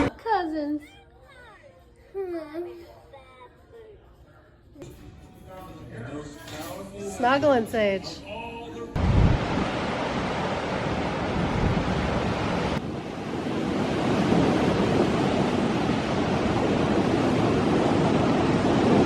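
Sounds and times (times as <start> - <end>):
wind buffeting microphone: 9.0 - 19.0.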